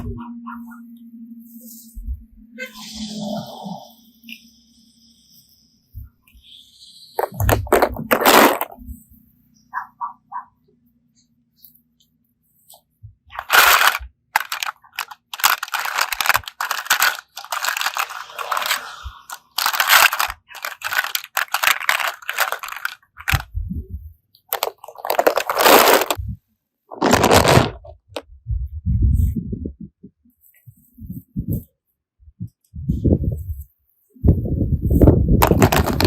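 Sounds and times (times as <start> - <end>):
slime crunching and crackling: 13.4 - 23.4, 24.5 - 26.2, 26.9 - 27.8.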